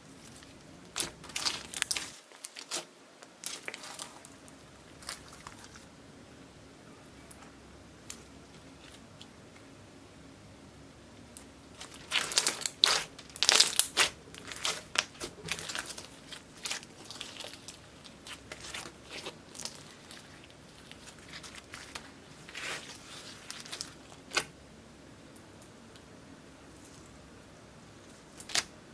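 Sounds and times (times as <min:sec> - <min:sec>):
slime squished sticky crackles: 0:00.2 - 0:05.9, 0:11.7 - 0:24.5.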